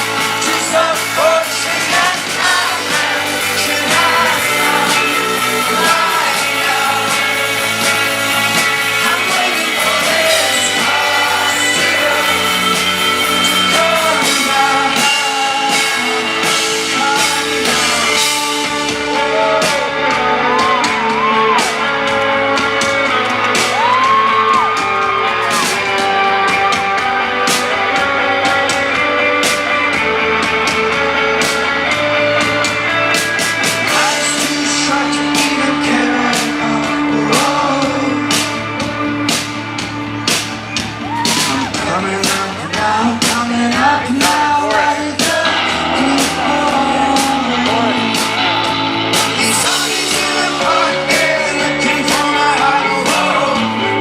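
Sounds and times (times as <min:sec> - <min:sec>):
person singing: 0:00.0 - 0:30.1, 0:33.5 - 0:40.4, 0:41.1 - 0:54.0
crowd shouting and whooping: 0:00.0 - 0:54.0
rock band playing live: 0:00.0 - 0:54.0.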